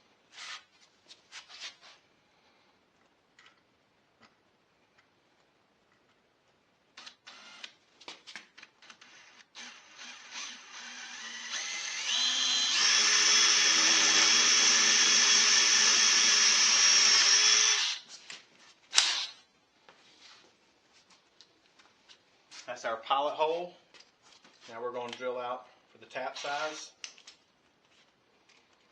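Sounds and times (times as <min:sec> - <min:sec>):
power drill whining: 0:07.0 - 0:07.7, 0:08.8 - 0:18.0, 0:18.9 - 0:19.4.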